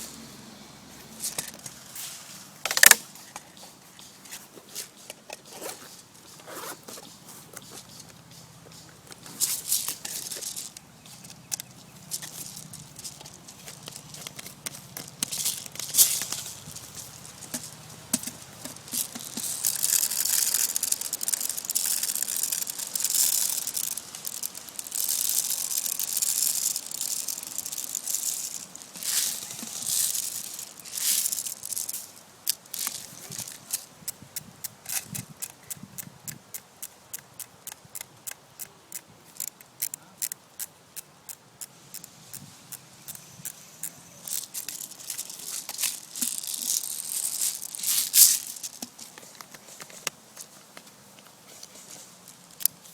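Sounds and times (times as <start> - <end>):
rustling in dry leaves: 0.0 - 35.4, 41.7 - 52.9
footsteps crunching dry leaves: 0.9 - 32.2, 44.3 - 52.9.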